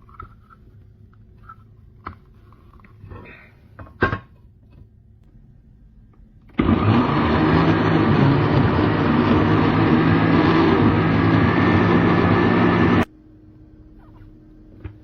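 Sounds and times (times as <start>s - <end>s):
blender motor running: 6.6s - 13.1s.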